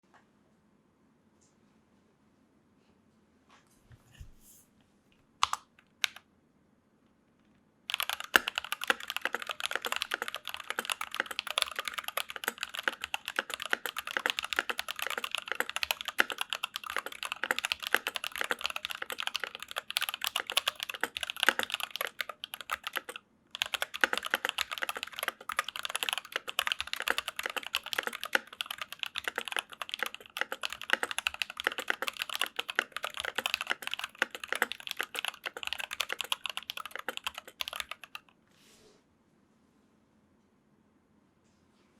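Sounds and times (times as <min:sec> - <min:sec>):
fast typing on mechanical keyboard: 0:07.9 - 0:38.3.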